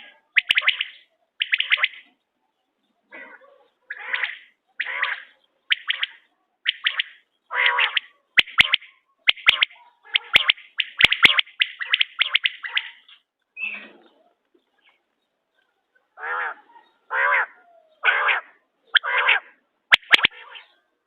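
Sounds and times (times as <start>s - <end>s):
quail calling: 0.0s - 2.2s, 3.1s - 14.3s, 16.2s - 20.9s.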